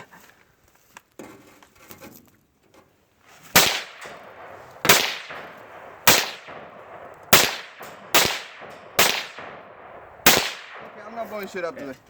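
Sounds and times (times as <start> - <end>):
gunshots: 3.6 - 11.2.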